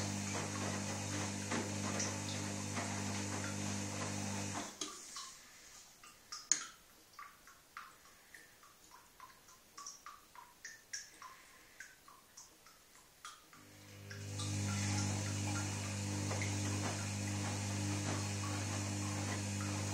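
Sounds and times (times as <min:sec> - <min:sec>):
washing machine motor hum: 0:00.0 - 0:04.8, 0:13.5 - 0:19.9
water dripping inside drum: 0:00.0 - 0:19.9.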